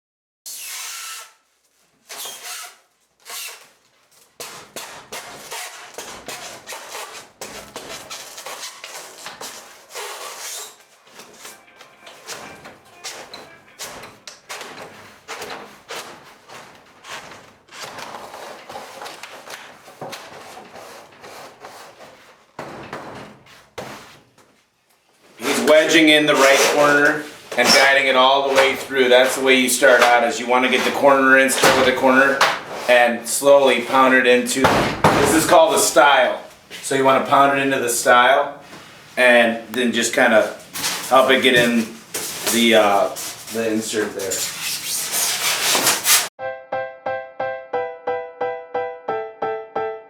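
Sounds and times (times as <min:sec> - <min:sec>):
insulation scraping against door: 0:04.4 - 0:24.4, 0:25.4 - 0:46.3
pounding knocks: 0:26.8 - 0:32.9, 0:33.9 - 0:35.9.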